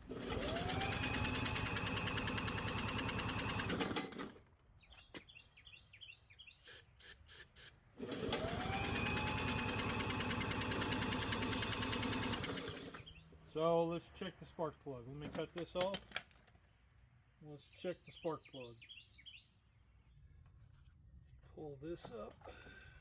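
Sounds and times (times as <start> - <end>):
engine turning over: 0.0 - 4.4, 8.0 - 13.1.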